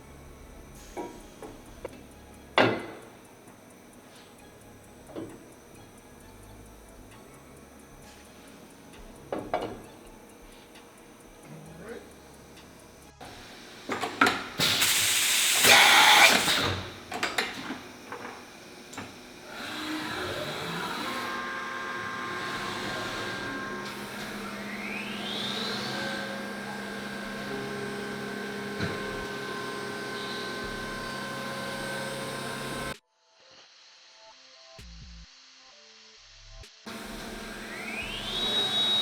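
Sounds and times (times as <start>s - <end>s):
shop machinery humming: 0.0s - 33.0s, 36.9s - 39.0s
loud hissing blast: 14.6s - 16.8s.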